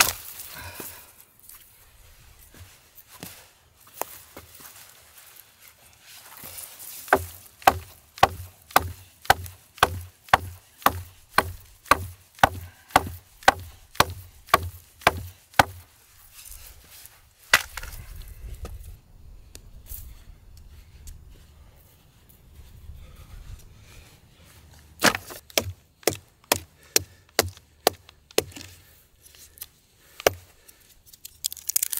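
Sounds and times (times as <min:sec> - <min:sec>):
wood being chopped: 0:07.1 - 0:15.8, 0:17.5 - 0:17.9, 0:25.0 - 0:28.7, 0:30.1 - 0:30.4.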